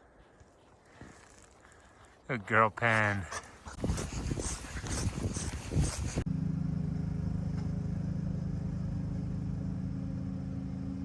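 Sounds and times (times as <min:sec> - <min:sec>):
vehicle engine running steadily: 0:06.2 - 0:11.0.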